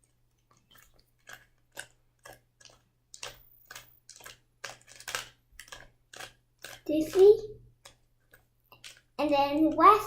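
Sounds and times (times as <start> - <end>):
puzzle cube plastic clicks: 1.3 - 7.2, 7.8 - 9.2.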